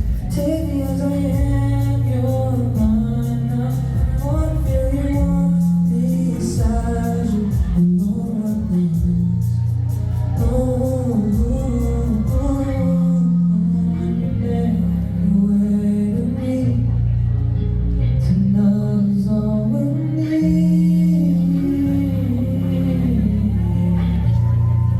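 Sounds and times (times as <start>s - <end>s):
band with bass and drums: 0.0s - 13.7s
man singing: 0.0s - 24.9s.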